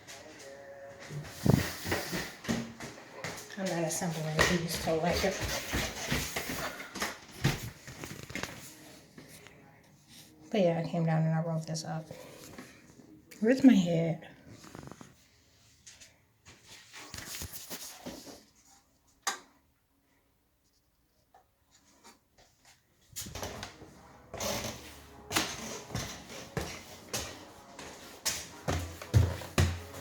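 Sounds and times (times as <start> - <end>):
rustling and knocking of objects: 1.2 - 3.1, 4.2 - 8.6.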